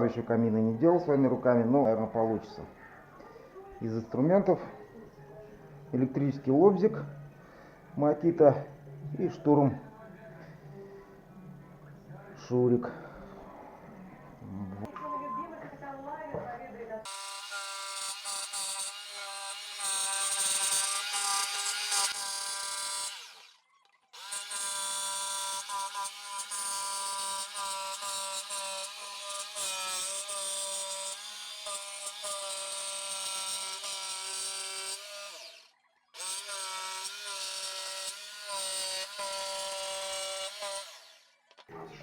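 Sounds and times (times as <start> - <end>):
electric jigsaw cutting wood: 17.0 - 41.7.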